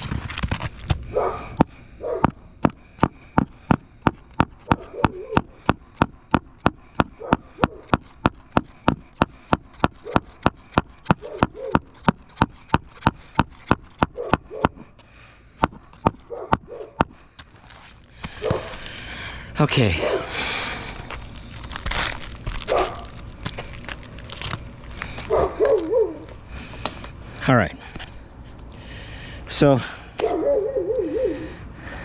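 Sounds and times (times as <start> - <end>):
hammer striking nails: 1.6 - 14.9, 15.6 - 17.2.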